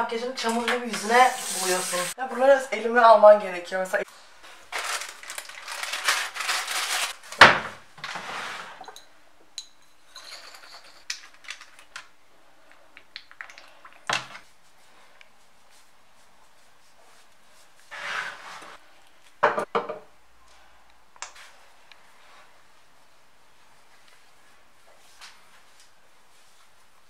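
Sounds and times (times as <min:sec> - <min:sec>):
rustling: 0:04.2 - 0:07.4.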